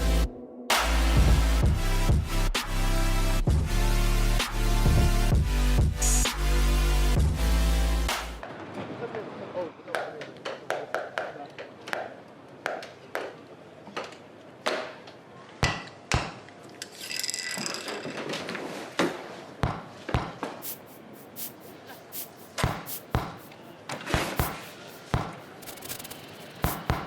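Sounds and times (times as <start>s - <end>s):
sharp knocks and taps: 22.6s - 23.6s.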